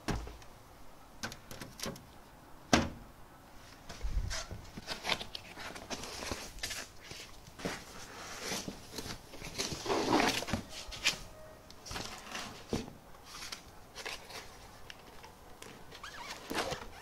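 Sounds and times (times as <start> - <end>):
packing material rustling: 4.2 - 17.0.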